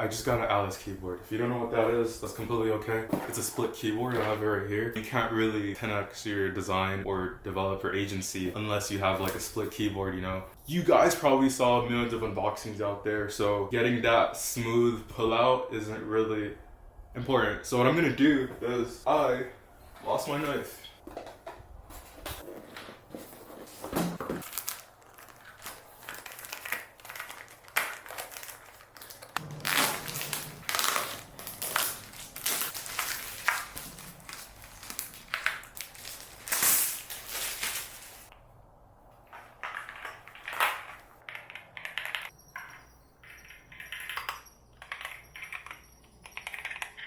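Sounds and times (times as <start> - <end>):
cardboard and plastic tearing: 24.2 - 38.3.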